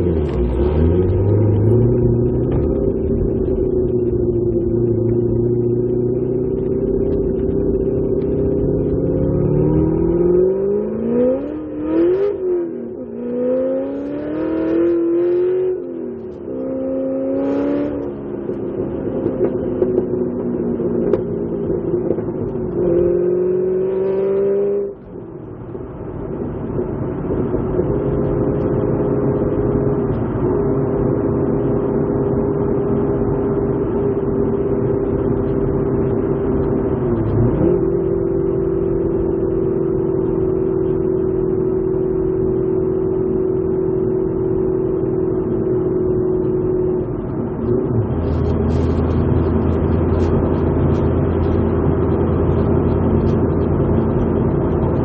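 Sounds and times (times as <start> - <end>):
sports car engine accelerating: 0.0 - 55.0.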